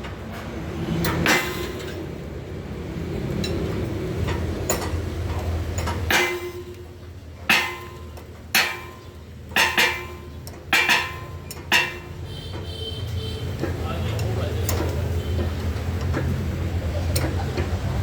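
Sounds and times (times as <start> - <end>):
sharp metallic knocks: 1.0 - 2.2, 4.2 - 13.8.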